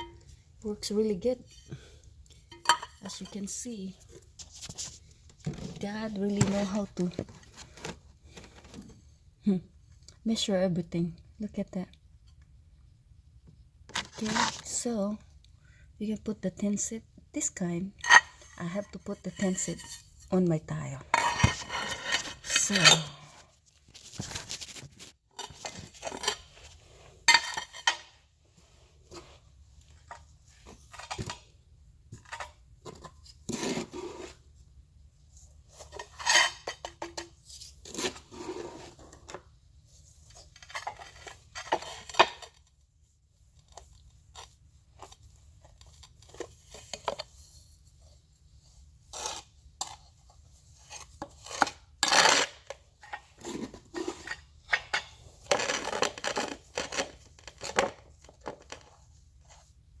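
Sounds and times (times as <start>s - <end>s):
metal trowel scraping and clinking: 21.1s - 23.4s.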